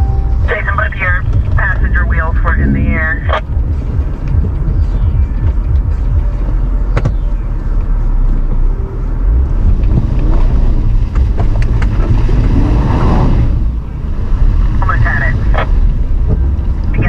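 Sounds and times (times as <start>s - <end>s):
engine and tyres rumbling: 0.0s - 17.0s.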